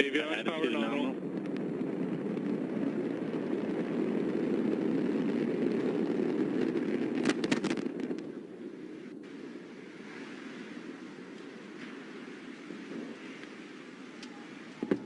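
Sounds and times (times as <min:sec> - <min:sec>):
rocket launch deep rumble: 0:00.0 - 0:15.0
sharp cracks: 0:00.9 - 0:08.6.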